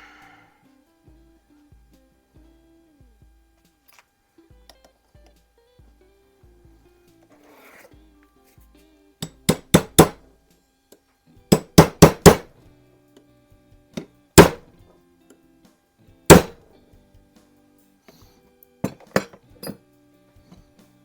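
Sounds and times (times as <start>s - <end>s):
small hammer tapping metal: 9.2s - 10.2s, 11.5s - 12.5s, 14.4s - 14.6s, 16.3s - 16.6s.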